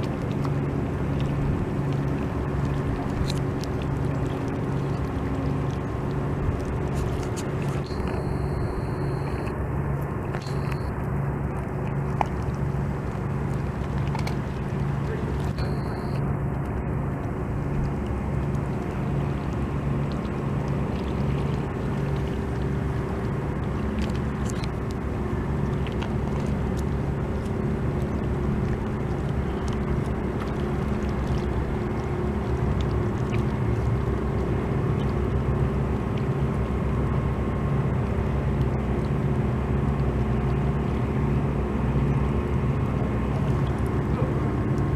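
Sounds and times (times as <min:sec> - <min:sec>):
motor idling with throb: 0:07.7 - 0:09.8, 0:14.8 - 0:16.4.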